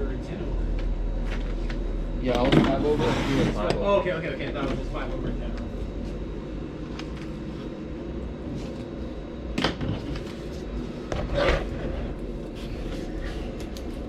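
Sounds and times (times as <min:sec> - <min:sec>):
steady low rumble: 0:10.2 - 0:14.0.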